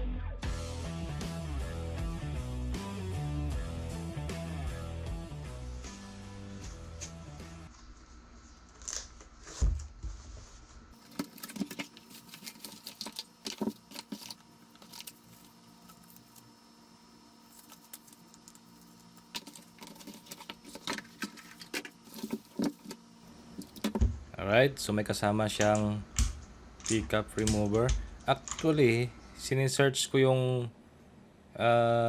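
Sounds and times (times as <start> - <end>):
keyboard clicks and rattles: 25.5 - 28.8.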